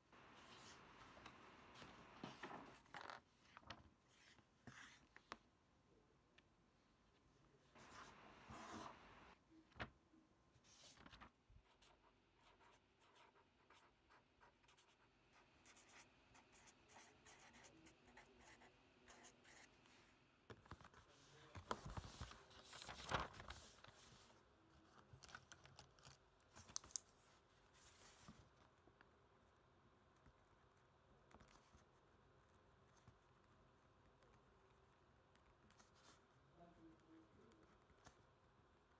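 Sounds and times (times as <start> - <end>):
pen scratching on paper: 11.7 - 19.7.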